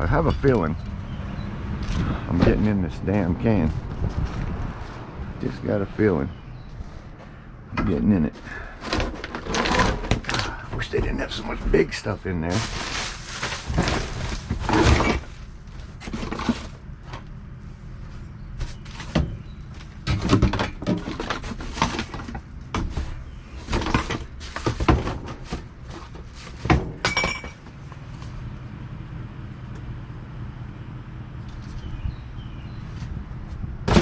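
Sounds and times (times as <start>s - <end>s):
goods clattering in a dumpster: 0.0s - 0.8s, 7.8s - 17.3s, 18.5s - 28.2s.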